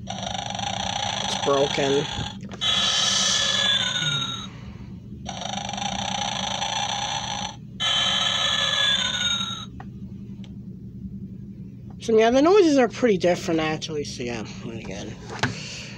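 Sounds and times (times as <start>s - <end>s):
toy snoring through small speaker: 0.0s - 4.5s, 5.2s - 9.7s.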